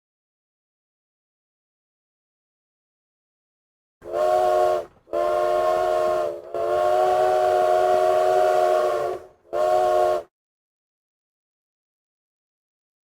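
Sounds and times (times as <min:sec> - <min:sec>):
steam locomotive whistle blasts: 0:04.0 - 0:10.3.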